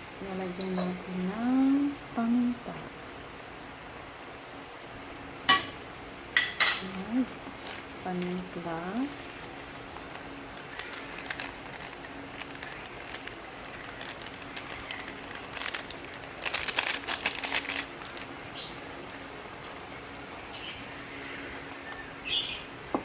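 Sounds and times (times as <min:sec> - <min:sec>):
steady low hum: 0:00.0 - 0:23.0
food frying in a pan: 0:05.4 - 0:20.7.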